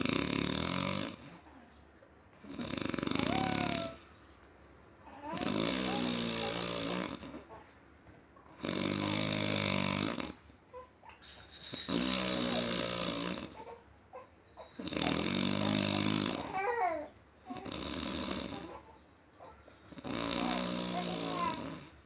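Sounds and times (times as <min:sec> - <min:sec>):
quiet breaths: 0:00.0 - 0:16.7
person snoring: 0:02.4 - 0:04.0, 0:05.2 - 0:07.3, 0:08.6 - 0:10.4, 0:11.9 - 0:13.7, 0:14.8 - 0:16.8, 0:20.0 - 0:21.9.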